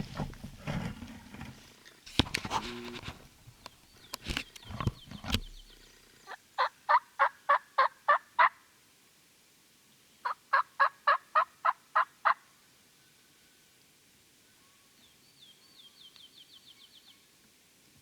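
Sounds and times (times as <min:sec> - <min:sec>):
turkey yelping: 0:06.6 - 0:08.6, 0:10.2 - 0:12.4.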